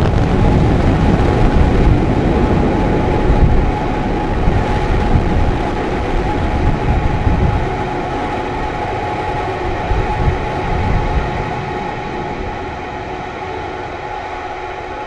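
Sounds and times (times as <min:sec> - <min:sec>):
rocket engine crackling rumble: 0:00.0 - 0:15.0.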